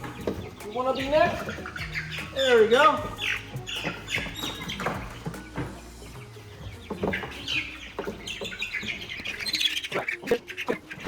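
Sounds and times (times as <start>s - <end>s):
chicks chirping and squawking: 0.0s - 11.0s.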